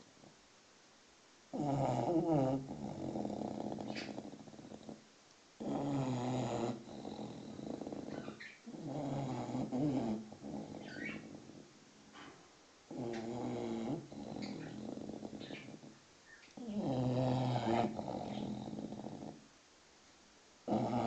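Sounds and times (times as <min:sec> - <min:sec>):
dog snoring: 0:01.5 - 0:05.0, 0:05.6 - 0:12.3, 0:12.9 - 0:16.0, 0:16.6 - 0:19.5, 0:20.6 - 0:21.0.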